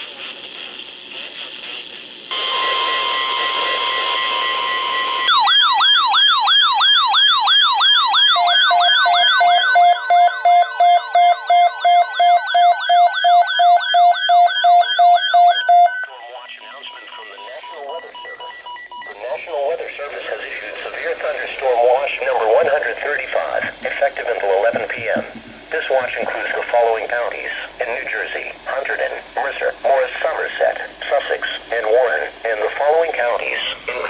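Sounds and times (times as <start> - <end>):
radio static hiss: 0.0 - 5.3, 16.1 - 18.4, 19.2 - 34.0
rising and falling siren: 2.3 - 16.0
pulsing beeping tone: 2.3 - 19.2.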